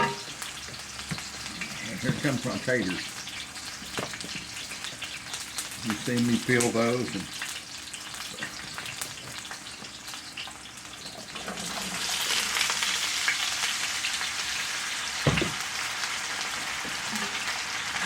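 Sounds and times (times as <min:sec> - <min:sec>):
potatoes sizzling in a skillet: 0:00.0 - 0:18.0
single knock: 0:15.3 - 0:15.6.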